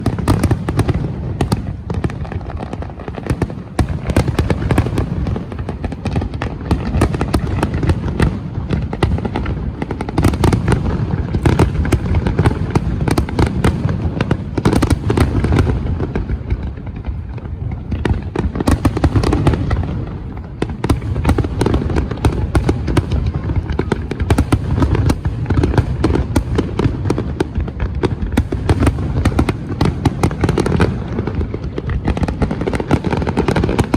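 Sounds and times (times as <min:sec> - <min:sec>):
fireworks bangs and crackling: 0:00.0 - 0:33.9.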